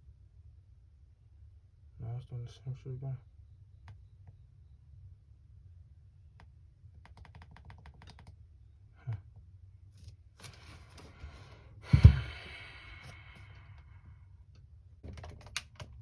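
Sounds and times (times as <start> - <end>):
small keyboard-like clicks: 6.4 - 8.4, 15.1 - 16.0
loud thump: 11.9 - 12.6.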